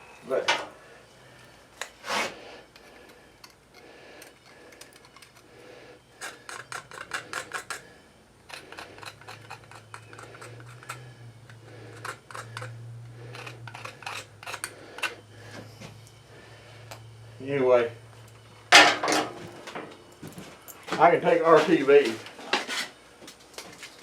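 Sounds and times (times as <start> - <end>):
low steady hum: 0.0 - 24.0
small parts clicking and tapping: 2.7 - 5.5, 6.2 - 15.2.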